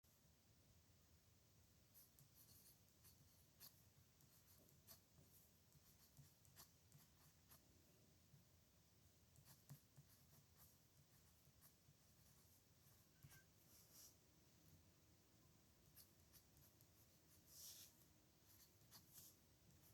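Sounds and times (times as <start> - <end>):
pen scratching on paper: 2.0 - 7.6, 9.4 - 12.6, 15.9 - 19.9.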